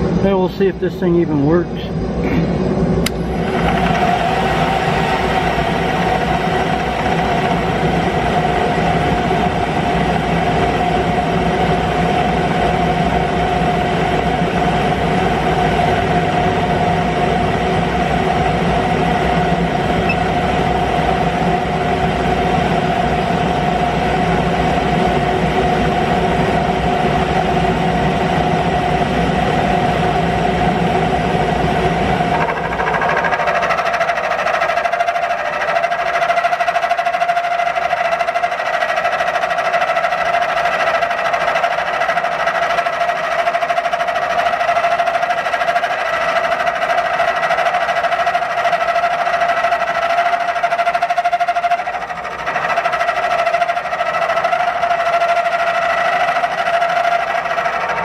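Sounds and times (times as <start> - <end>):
milling machine whining: 0.0 - 58.0
high ringing tones: 20.0 - 20.4.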